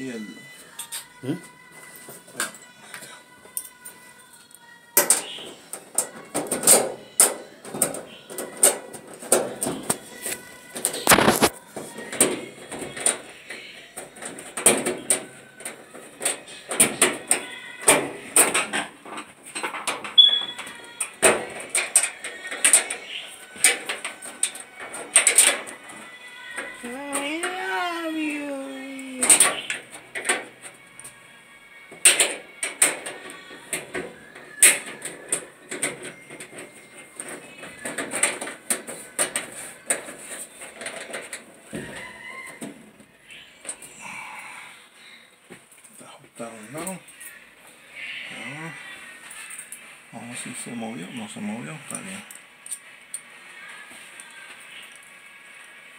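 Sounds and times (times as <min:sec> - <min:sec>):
knocks and rattles of dryer parts: 0:05.0 - 0:10.1, 0:14.0 - 0:20.2, 0:21.1 - 0:23.0, 0:32.0 - 0:43.0.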